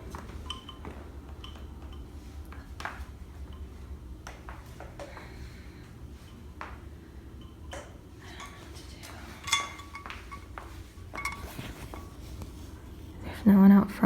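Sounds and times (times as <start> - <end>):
low room hum: 0.0 - 14.0
ringing clink of metal: 9.4 - 12.2.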